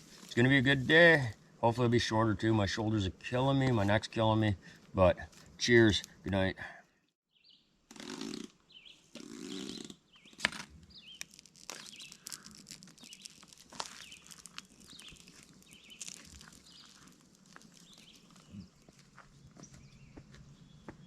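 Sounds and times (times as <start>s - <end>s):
rustling: 10.4s - 19.6s.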